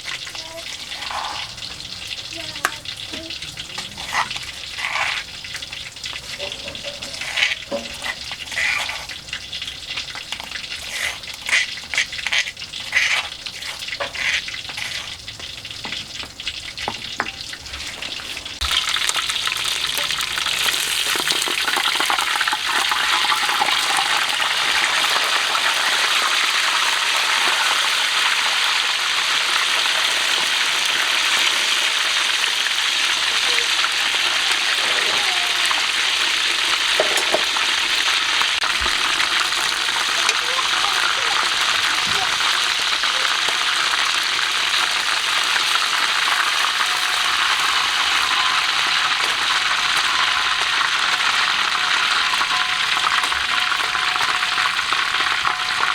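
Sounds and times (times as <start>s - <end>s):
fish sizzling in hot oil: 0.0s - 55.9s
kitchen clinks and knocks: 6.3s - 8.2s, 36.9s - 37.6s.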